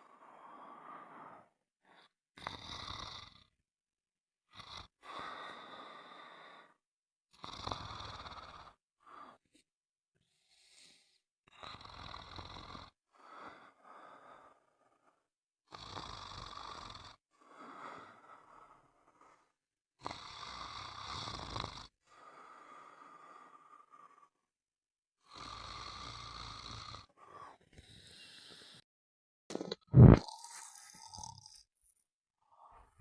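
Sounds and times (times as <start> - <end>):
person snoring: 2.4 - 3.5, 7.4 - 9.4, 15.7 - 21.9, 25.2 - 28.8, 29.6 - 31.7.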